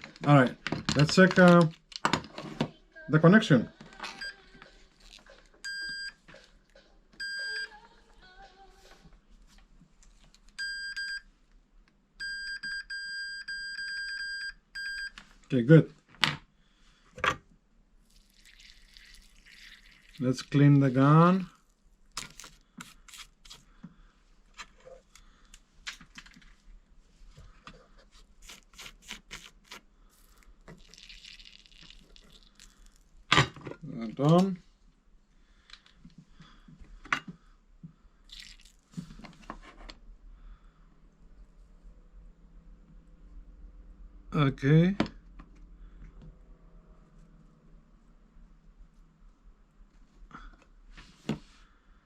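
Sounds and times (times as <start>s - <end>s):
scratchy rubbing: 28.2s - 30.4s.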